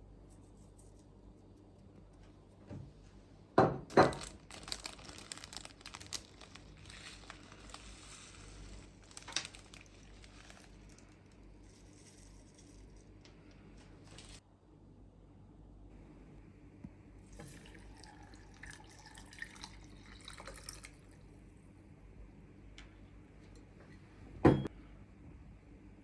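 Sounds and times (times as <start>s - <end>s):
rustling: 4.1s - 13.0s.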